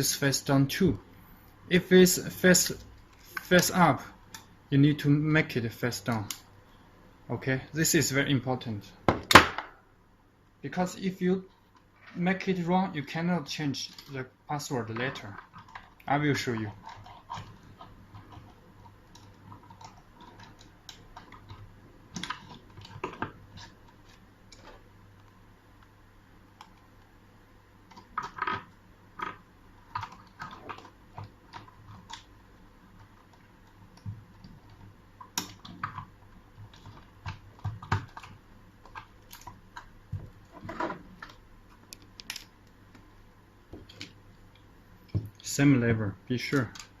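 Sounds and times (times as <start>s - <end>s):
small mechanical clicks and knocks: 33.0s - 43.0s.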